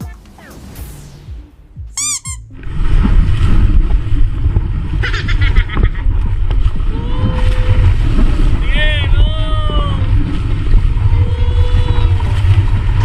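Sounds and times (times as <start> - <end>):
heavy low rumble: 0.0 - 13.0
wind buffeting microphone: 2.6 - 13.0.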